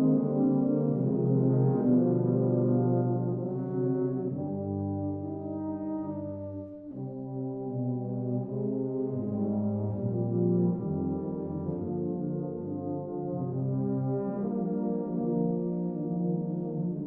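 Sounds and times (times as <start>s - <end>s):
tubas and euphoniums playing chords: 0.0s - 17.0s.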